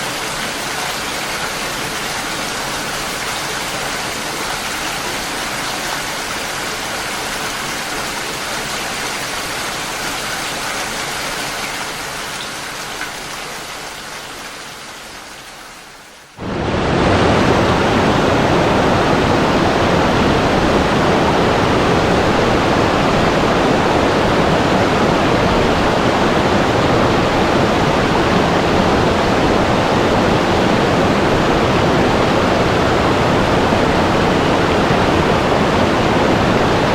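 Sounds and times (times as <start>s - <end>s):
water rushing: 0.0s - 36.9s.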